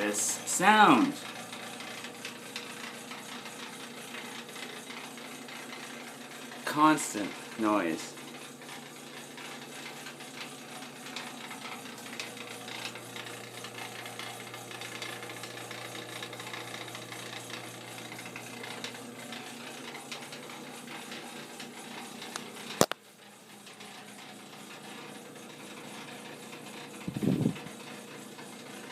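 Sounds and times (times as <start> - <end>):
furnace low hum: 0.0 - 28.9
fast rattling buzz: 26.2 - 28.9.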